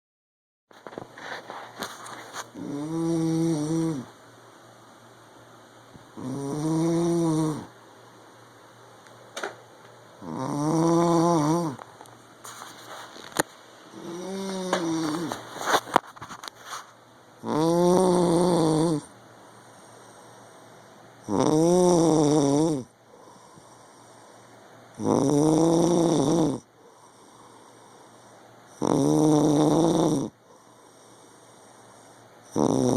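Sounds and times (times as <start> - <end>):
man snoring: 2.6 - 4.1, 6.2 - 7.7, 10.2 - 11.8, 13.9 - 15.4, 17.4 - 19.1, 21.2 - 23.9, 25.0 - 28.0, 28.7 - 32.9
quiet breathing: 19.4 - 21.2, 22.9 - 24.8, 26.6 - 28.7, 30.3 - 32.5.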